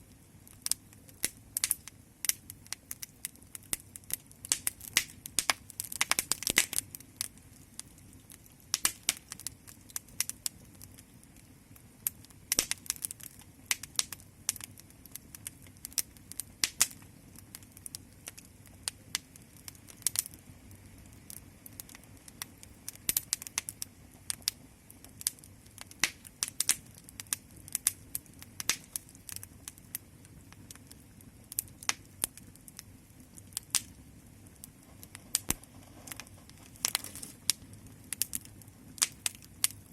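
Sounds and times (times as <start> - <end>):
fire crackling: 0.0 - 39.9
faint low rumble: 13.2 - 39.9.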